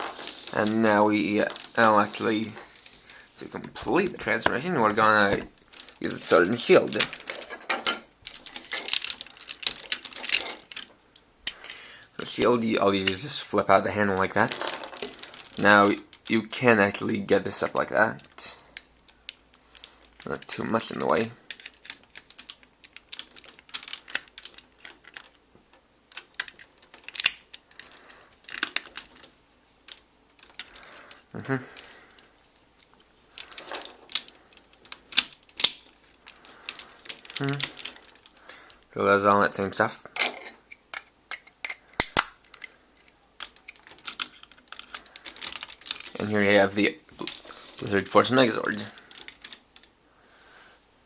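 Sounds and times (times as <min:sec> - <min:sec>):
plastic toy parts clicking: 0:04.4 - 0:13.3, 0:14.2 - 0:17.6, 0:18.7 - 0:50.0
sharp plastic clicks: 0:21.0 - 0:29.3, 0:31.8 - 0:39.4, 0:40.2 - 0:46.3.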